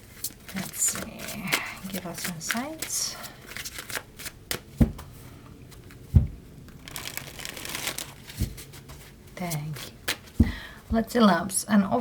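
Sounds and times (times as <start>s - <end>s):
cards being shuffled: 0.1s - 4.7s, 6.7s - 10.4s.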